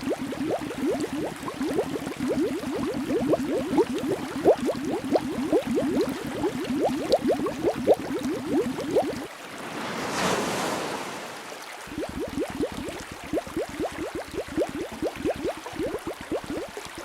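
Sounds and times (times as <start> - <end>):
underwater bubbling: 0.0 - 9.4, 11.8 - 17.0
water whooshing: 9.3 - 13.0.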